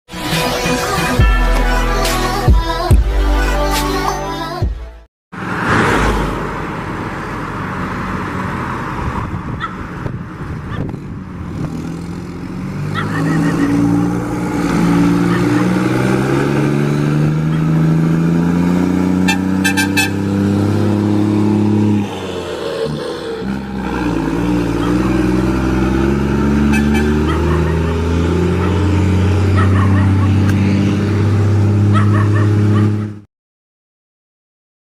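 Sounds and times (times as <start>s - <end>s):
truck diesel engine running: 9.8s - 33.1s.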